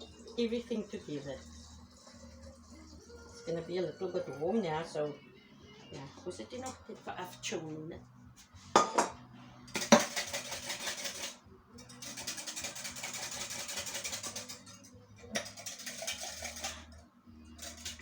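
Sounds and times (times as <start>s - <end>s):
dishes and utensils handled: 8.6s - 17.0s, 17.6s - 18.0s.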